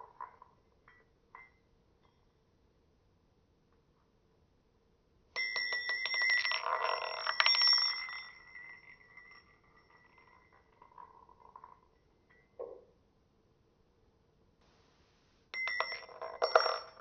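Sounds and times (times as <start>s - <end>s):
ring spinning on hard surface: 5.4s - 12.6s, 15.5s - 17.0s.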